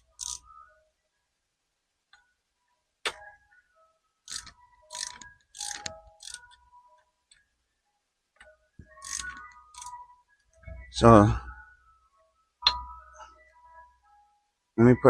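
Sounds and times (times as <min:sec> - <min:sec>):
metal hardware clinking: 0:04.3 - 0:06.6, 0:09.0 - 0:10.0.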